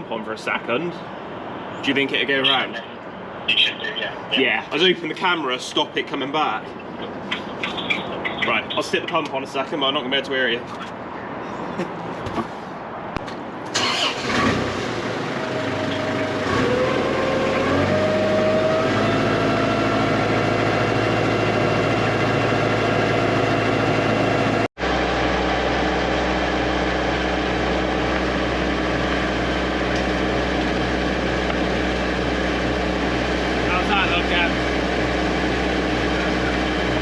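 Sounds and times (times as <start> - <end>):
pump engine running: 13.8 - 37.0.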